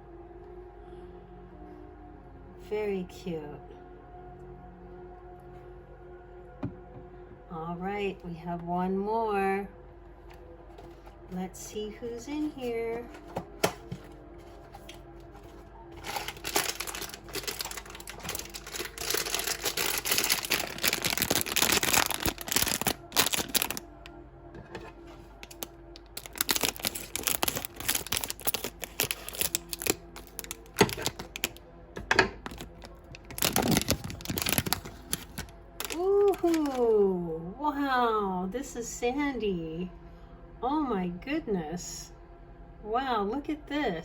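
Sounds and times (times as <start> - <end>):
packaging crackling and rustling: 12.4 - 24.1, 24.7 - 31.6, 32.4 - 36.9.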